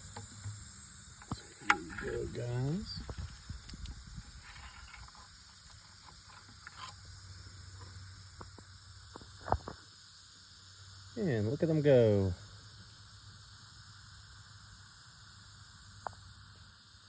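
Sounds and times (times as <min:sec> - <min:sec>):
steady high hiss: 0:00.0 - 0:17.0
faint rustles: 0:01.2 - 0:08.0.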